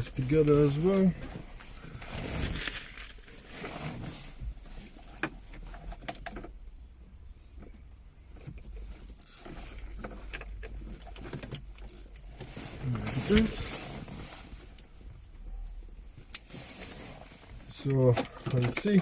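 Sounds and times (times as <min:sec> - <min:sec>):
wires rustling: 0:00.0 - 0:06.6, 0:07.5 - 0:15.4.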